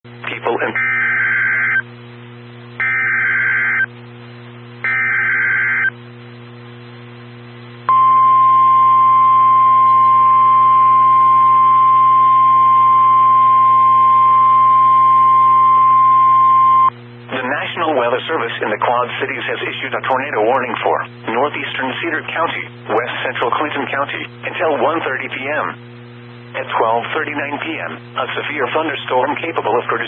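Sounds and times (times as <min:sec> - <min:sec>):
warbling digital data tones: 0:00.6 - 0:01.9, 0:02.8 - 0:03.9, 0:04.8 - 0:06.0
long steady warning alarm tone: 0:00.7 - 0:01.9, 0:02.8 - 0:04.0, 0:04.8 - 0:06.0, 0:07.9 - 0:16.9.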